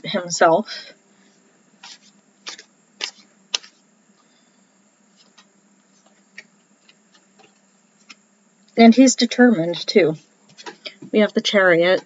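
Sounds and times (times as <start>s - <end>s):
cards snapping: 1.8s - 3.8s.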